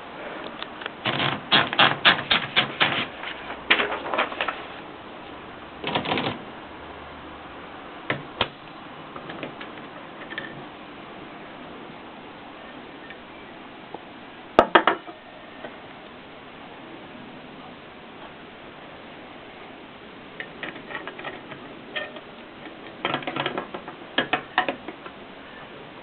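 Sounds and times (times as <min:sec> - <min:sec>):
typewriter keys clicking: 0:01.0 - 0:03.1, 0:05.8 - 0:06.4.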